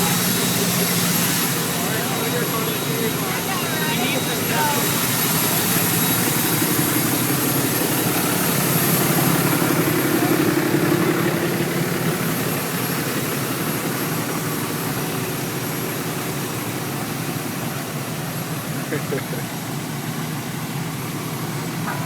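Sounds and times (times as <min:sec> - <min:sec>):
high turbo whistle: 0:00.0 - 0:11.1
pickup truck engine running: 0:00.0 - 0:22.0.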